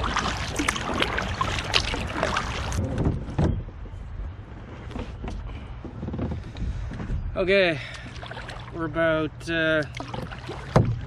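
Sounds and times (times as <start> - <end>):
paddle splashing in water: 0.0 - 2.8, 8.0 - 8.8, 9.8 - 11.0
wind on microphone: 0.0 - 7.4.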